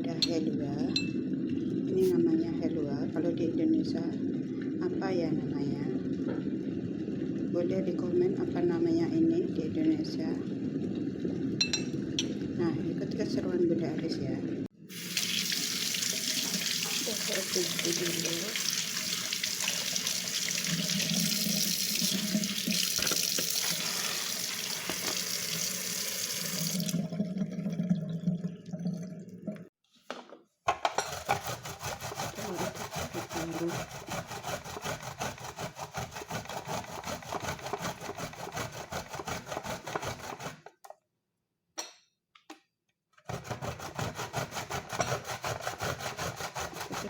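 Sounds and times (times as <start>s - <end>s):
tap water running into sink: 14.9s - 29.7s.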